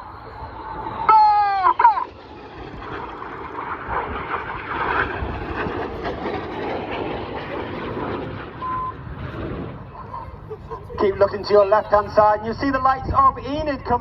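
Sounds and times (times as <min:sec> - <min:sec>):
jet engines overhead: 0:00.0 - 0:14.0.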